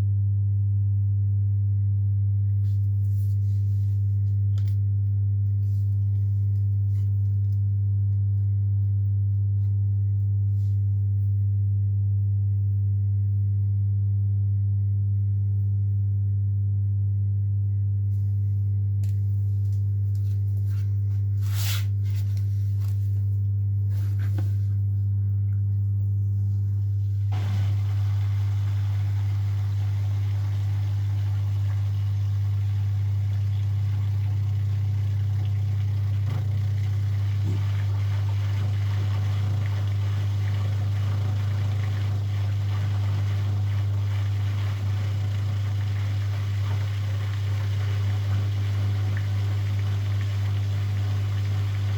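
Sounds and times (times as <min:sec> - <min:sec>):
washing machine humming: 0:19.3 - 0:51.9
mechanical running noise: 0:27.3 - 0:51.9.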